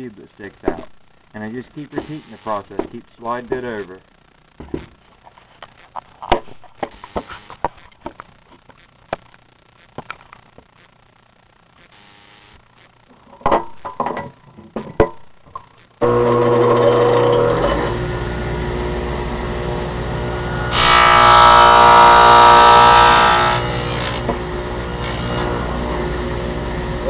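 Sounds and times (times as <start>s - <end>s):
table saw running: 16.0s - 27.0s
saw blade cutting wood: 20.7s - 24.3s.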